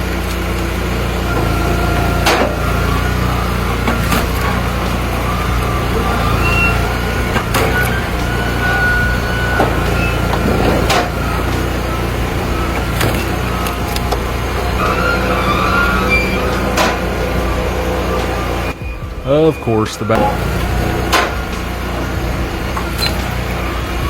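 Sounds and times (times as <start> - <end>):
wood splitter engine running: 0.0 - 24.0
wood cracking: 0.1 - 15.0.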